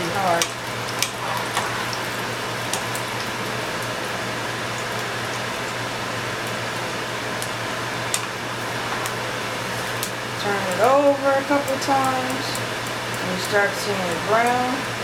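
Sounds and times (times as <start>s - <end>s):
tortilla sizzling in hot oil: 0.0s - 13.8s
oil popping: 0.1s - 5.8s.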